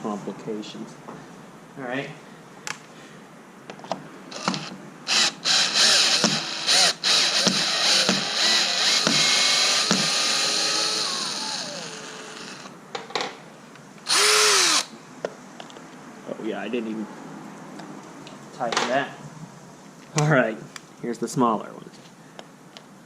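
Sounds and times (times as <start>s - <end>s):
cordless drill driving screws: 4.3s - 12.8s, 14.1s - 14.9s.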